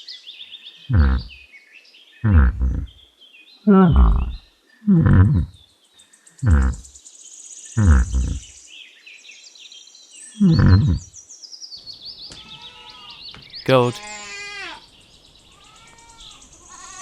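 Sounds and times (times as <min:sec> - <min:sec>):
yak grunting: 0:00.9 - 0:01.3, 0:02.2 - 0:02.9, 0:03.7 - 0:05.5, 0:06.4 - 0:06.8, 0:07.8 - 0:08.4, 0:10.4 - 0:11.0.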